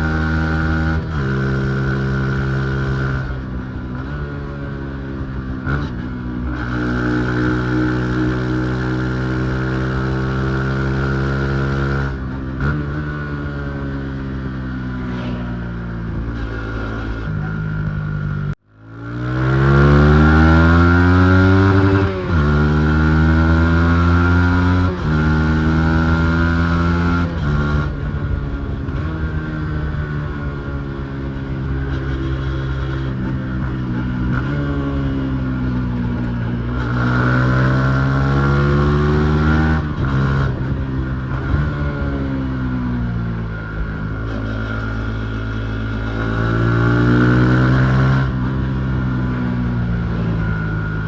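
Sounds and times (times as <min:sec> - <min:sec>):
motorcycle engine revving: 0:00.0 - 0:51.0.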